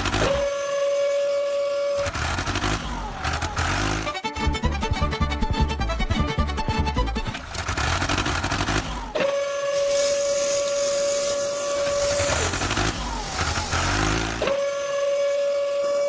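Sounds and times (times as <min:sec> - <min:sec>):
horn blast: 0:00.0 - 0:03.1, 0:09.2 - 0:16.0
steady hiss: 0:09.8 - 0:12.3.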